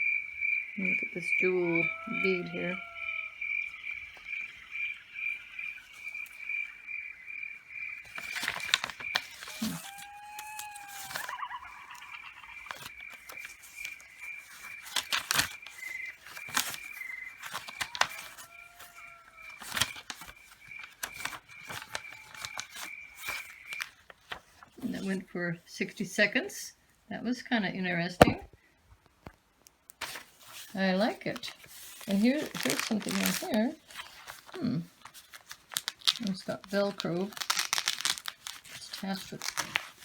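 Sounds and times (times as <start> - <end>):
insect chirping in pulses: 0.0 - 8.0
short bird calls: 0.0 - 8.4, 9.0 - 24.0
paper crackling and rustling: 8.0 - 26.0, 29.2 - 40.0.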